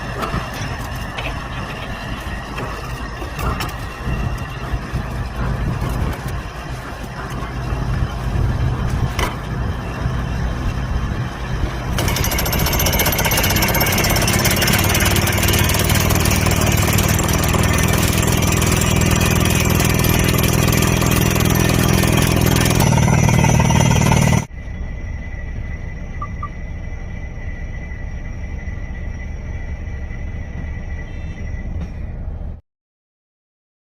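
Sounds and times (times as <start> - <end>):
excavator diesel engine running: 0.0 - 32.6
rock drill hammering: 12.0 - 24.5.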